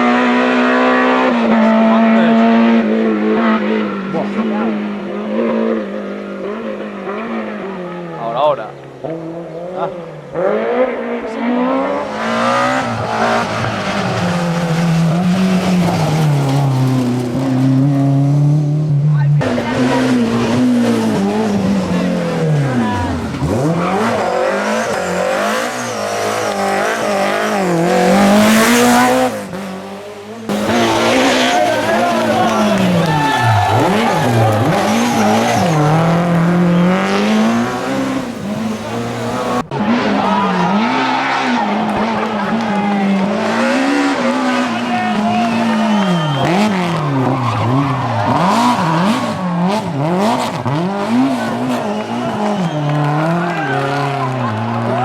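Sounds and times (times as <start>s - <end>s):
rally car engine revving: 0.0s - 55.0s
tyre noise rush: 11.7s - 18.5s, 19.4s - 55.0s.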